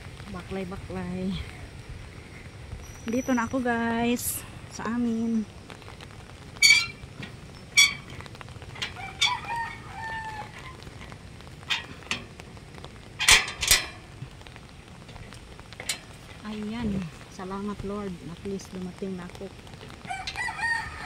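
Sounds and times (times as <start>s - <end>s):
wind and rain rushing: 0.0s - 21.0s
rooster crowing: 8.9s - 10.8s, 20.0s - 21.0s
sharp clicks and knocks: 10.5s - 14.3s.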